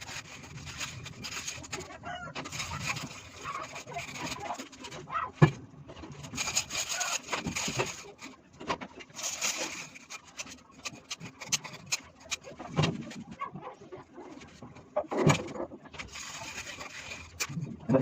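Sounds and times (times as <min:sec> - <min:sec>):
hand tool scraping stone: 0:00.0 - 0:05.1, 0:06.3 - 0:08.3, 0:09.1 - 0:13.1, 0:16.0 - 0:18.0.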